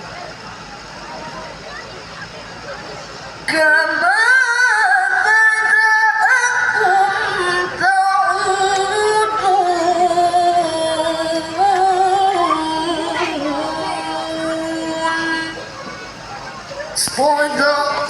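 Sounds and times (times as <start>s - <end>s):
woman reciting melodically: 3.4s - 15.8s, 17.0s - 18.0s.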